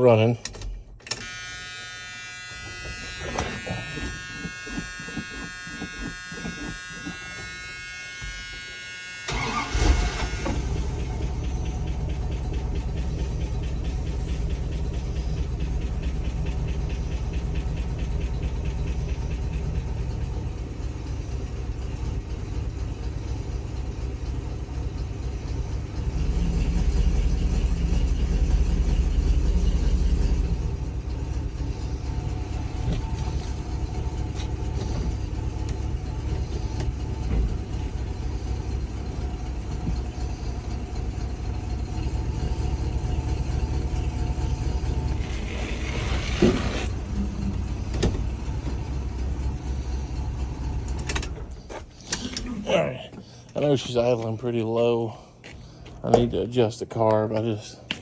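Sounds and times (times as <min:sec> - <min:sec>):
car engine idling and revving: 0:00.5 - 0:56.5
starter motor whine: 0:01.0 - 0:54.0.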